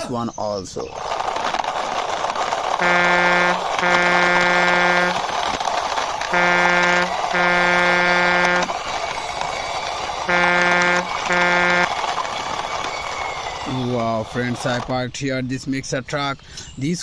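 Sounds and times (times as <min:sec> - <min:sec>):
toy wheels rolling: 0:00.7 - 0:15.1
toy truck horn honking: 0:02.7 - 0:13.1.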